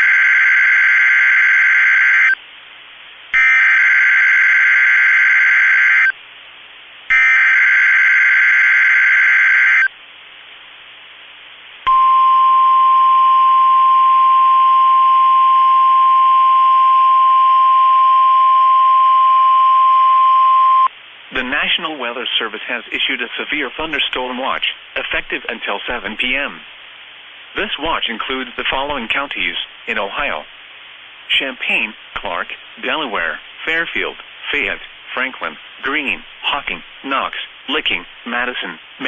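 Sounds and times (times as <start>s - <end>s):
steady warning alarm tone: 0.0s - 2.4s, 3.4s - 6.2s, 7.1s - 9.9s.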